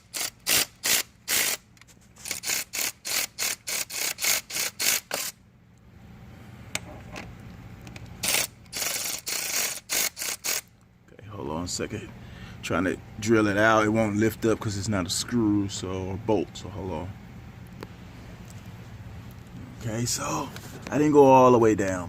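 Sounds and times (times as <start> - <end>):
hand ratchet clicking: 0.0 - 1.6, 2.2 - 5.4, 8.2 - 10.7.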